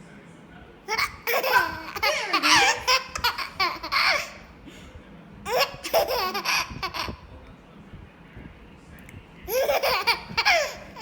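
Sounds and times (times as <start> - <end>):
young child giggling: 0.9 - 4.4.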